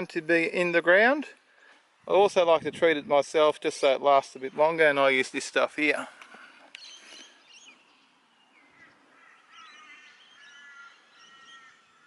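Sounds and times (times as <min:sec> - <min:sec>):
faint birdsong: 0:01.2 - 0:02.4, 0:03.6 - 0:12.0.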